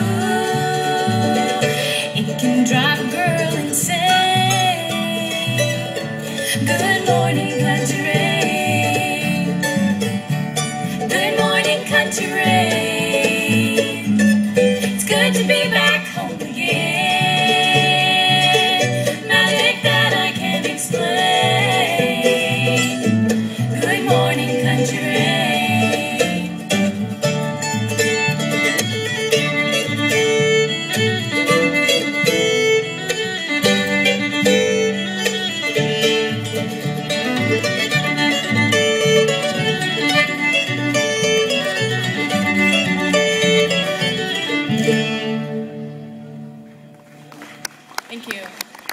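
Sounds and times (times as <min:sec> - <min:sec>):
low bass notes: 0:00.0 - 0:47.3
banjo: 0:00.0 - 0:47.6
fiddle melody: 0:00.0 - 0:48.0
acoustic guitar: 0:00.0 - 0:48.3.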